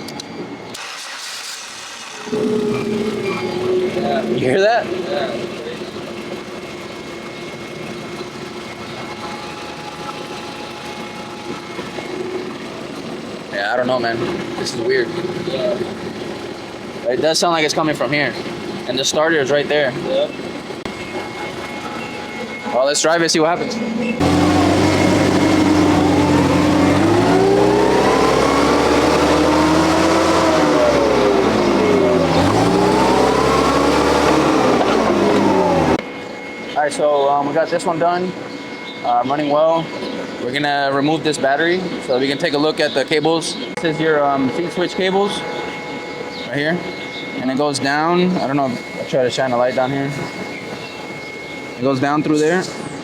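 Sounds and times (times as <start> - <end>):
constant hum: 0.0 - 53.0
forklift engine running: 0.7 - 13.6, 24.2 - 36.2.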